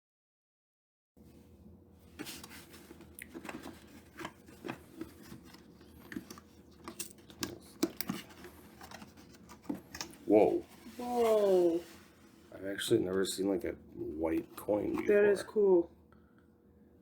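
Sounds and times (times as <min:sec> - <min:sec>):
packaging rustling and crinkling: 0:02.1 - 0:12.6.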